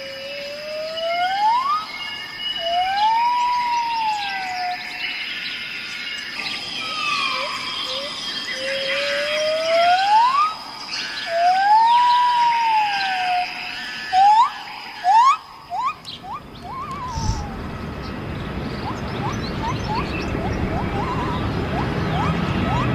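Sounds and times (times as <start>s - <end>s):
loud whistled bird call: 0.0s - 5.6s, 6.4s - 17.7s, 18.8s - 22.9s
songbirds chirping: 0.0s - 22.9s
quick rising whistles: 14.1s - 17.6s, 20.7s - 22.9s.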